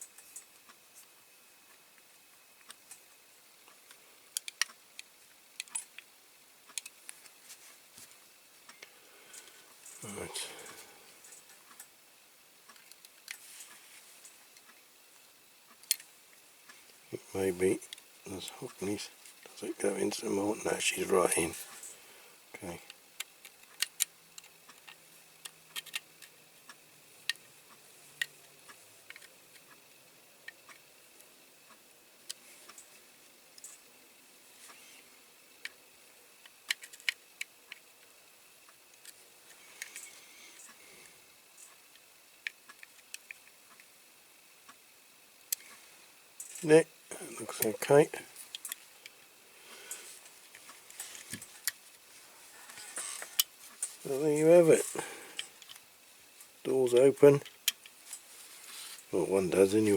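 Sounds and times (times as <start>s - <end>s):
screwdriver clicking on metal toy: 23.2s - 26.3s.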